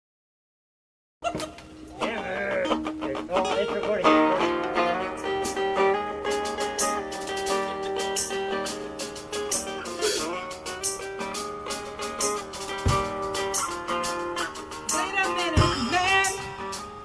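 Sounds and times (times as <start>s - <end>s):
guitar music: 1.3s - 17.0s
percussive hits: 11.8s - 17.0s.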